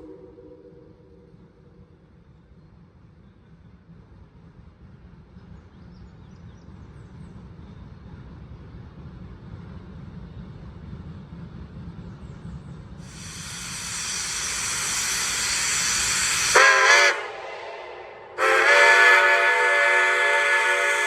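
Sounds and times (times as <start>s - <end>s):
steam hissing: 13.0s - 21.0s
locomotive chime whistle: 13.2s - 17.5s, 18.4s - 21.0s.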